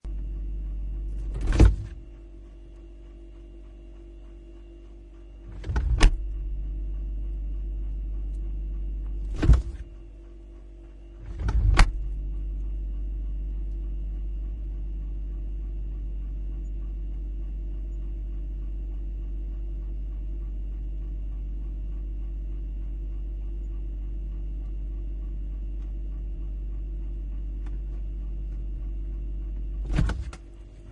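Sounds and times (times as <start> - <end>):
refrigerator hum: 0.0 - 30.9
door seal releasing: 1.3 - 2.0, 9.3 - 9.8, 11.3 - 12.0, 29.8 - 30.4
refrigerator door thumping shut: 1.3 - 2.0, 5.5 - 6.3, 9.3 - 9.9, 11.2 - 12.0, 29.8 - 30.5.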